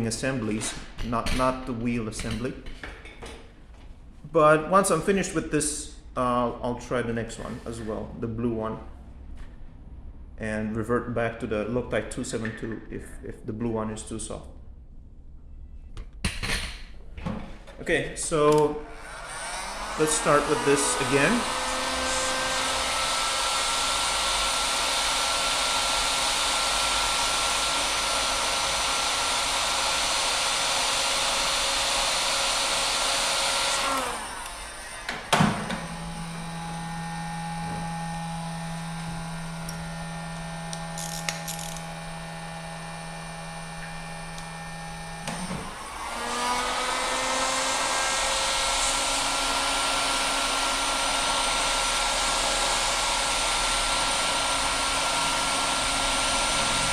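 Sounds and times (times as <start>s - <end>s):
heat gun blowing: 18.6s - 56.9s
steady low hum: 35.4s - 45.8s.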